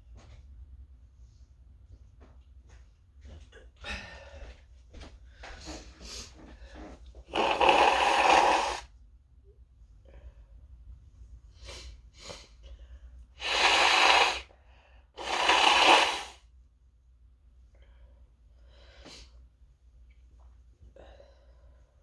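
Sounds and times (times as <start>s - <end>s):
person sniffing: 7.3s - 8.9s, 13.4s - 14.5s, 15.2s - 16.4s.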